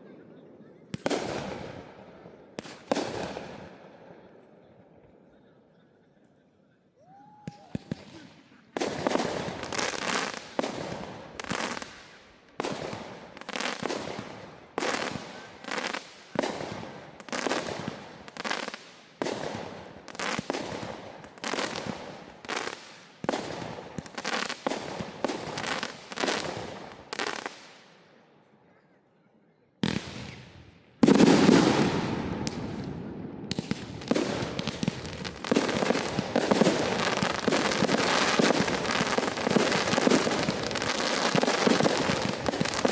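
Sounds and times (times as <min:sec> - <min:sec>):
dense fireworks barrage: 0:01.0 - 0:03.8, 0:07.7 - 0:27.8, 0:29.8 - 0:42.9
firework bangs rumbling: 0:31.0 - 0:42.9.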